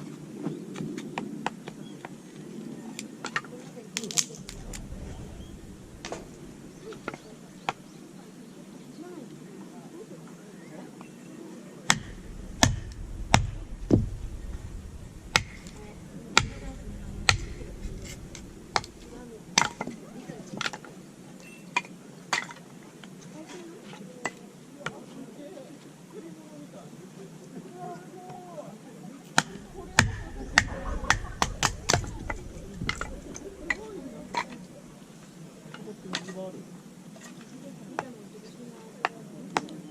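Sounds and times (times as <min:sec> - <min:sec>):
sharp knocks: 0:11.9 - 0:20.0, 0:29.4 - 0:34.6.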